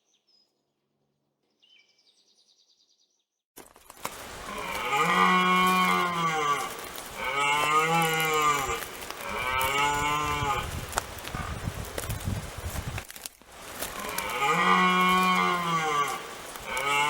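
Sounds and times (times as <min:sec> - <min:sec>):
cow mooing: 0:04.5 - 0:10.7, 0:14.0 - 0:17.0.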